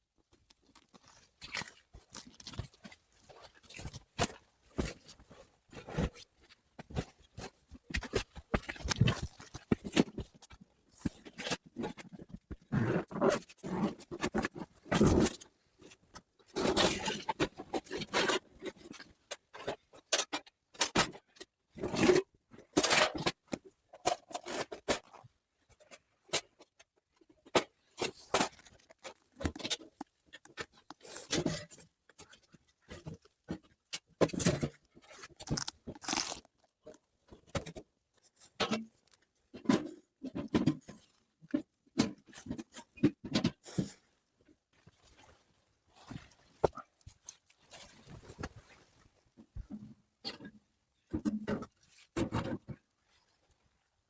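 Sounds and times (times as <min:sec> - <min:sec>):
hands crunching and scraping materials: 0:00.3 - 0:21.2, 0:27.4 - 0:44.0.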